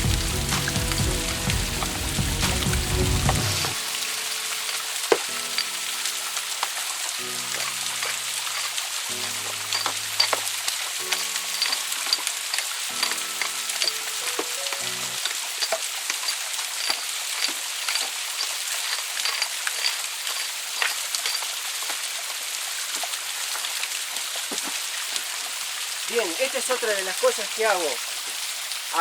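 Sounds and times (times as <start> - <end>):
soft background music: 0.0 - 16.0
waterfall splashing: 0.0 - 29.0.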